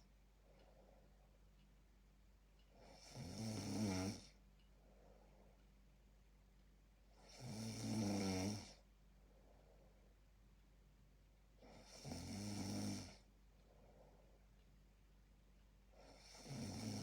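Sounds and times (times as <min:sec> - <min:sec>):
person snoring: 0:02.8 - 0:04.3, 0:07.2 - 0:08.8, 0:11.6 - 0:13.2, 0:16.0 - 0:17.0.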